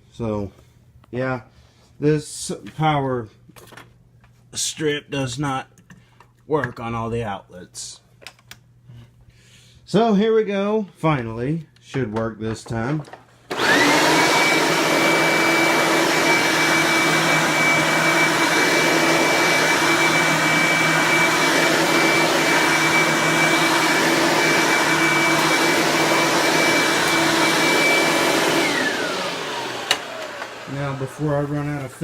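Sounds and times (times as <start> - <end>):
vacuum cleaner motor whining: 13.5 - 32.0.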